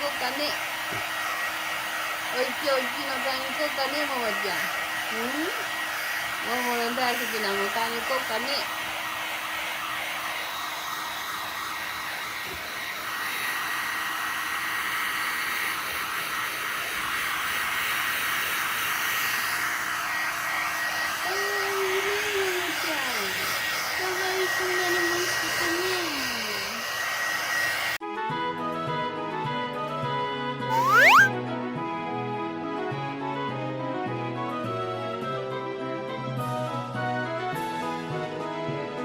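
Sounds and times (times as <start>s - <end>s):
hair dryer blowing: 0.0s - 28.0s
music: 28.0s - 39.0s.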